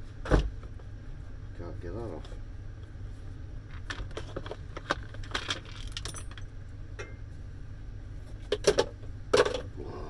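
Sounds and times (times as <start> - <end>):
metal parts and tools clinking: 5.0 - 7.1.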